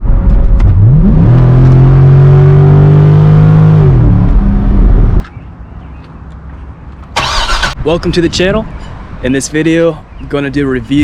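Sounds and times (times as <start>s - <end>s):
car engine revving: 0.4s - 5.2s.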